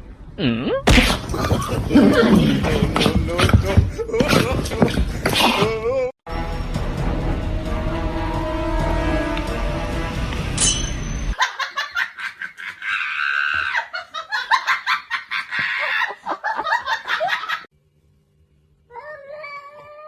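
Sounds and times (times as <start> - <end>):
background music: 6.3 - 11.4
person laughing hard: 11.4 - 17.7.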